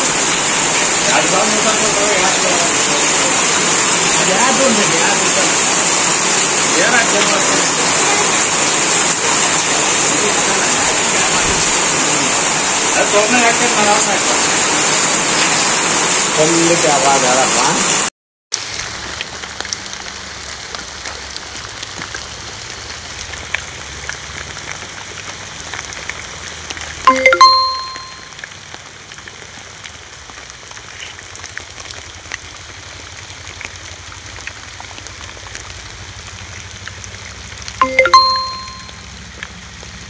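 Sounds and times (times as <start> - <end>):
steady rain falling: 0.0 - 40.0
bell-like ding: 27.1 - 28.3, 37.8 - 39.0.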